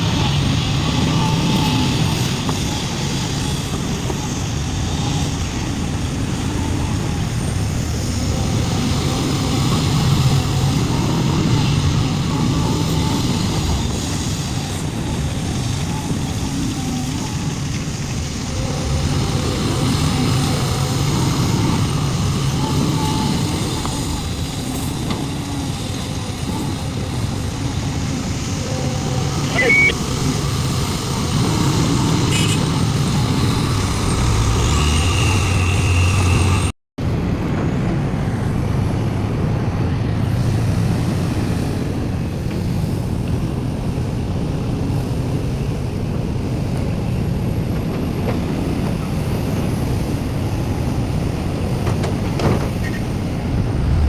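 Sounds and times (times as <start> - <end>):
heavy diesel engine rumbling: 0.0 - 36.7, 50.8 - 54.0.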